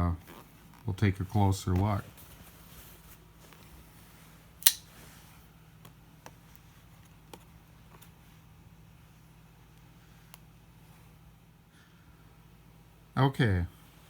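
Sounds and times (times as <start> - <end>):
packaging snapping: 4.6 - 4.9.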